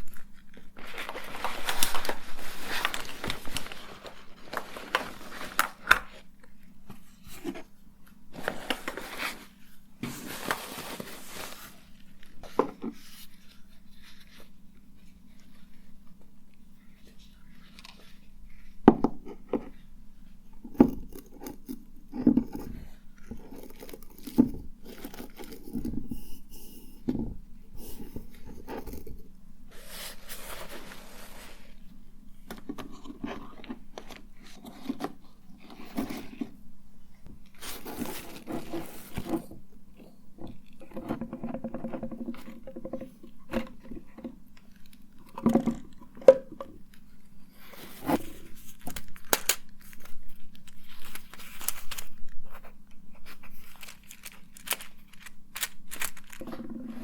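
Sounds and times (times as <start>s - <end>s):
rustling: 0.0s - 7.7s, 8.3s - 15.9s, 27.9s - 36.6s, 37.3s - 39.6s, 46.9s - 57.0s
faint steady hum: 0.0s - 57.0s.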